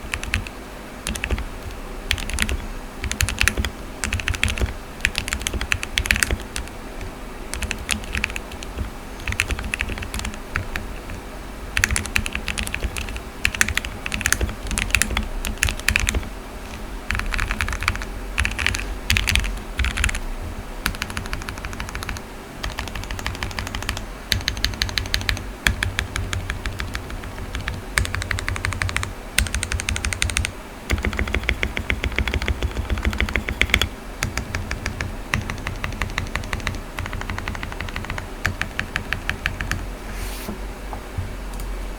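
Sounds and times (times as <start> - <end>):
mechanical keyboard key clacks: 1.1 - 11.2, 20.9 - 39.8.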